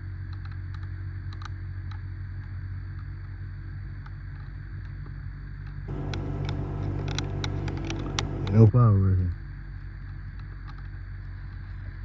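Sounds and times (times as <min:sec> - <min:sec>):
low mechanical hum: 0:00.0 - 0:12.0
faint sharp clicks: 0:05.9 - 0:08.6.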